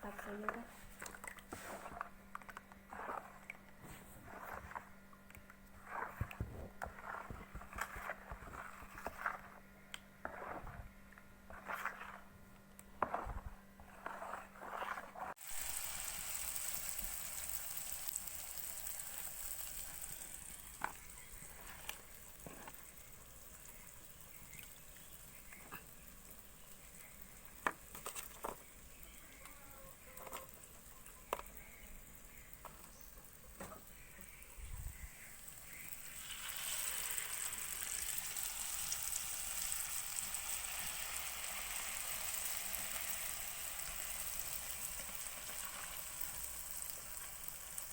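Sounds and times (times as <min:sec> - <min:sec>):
batter sizzling in hot oil: 0:15.3 - 0:47.9.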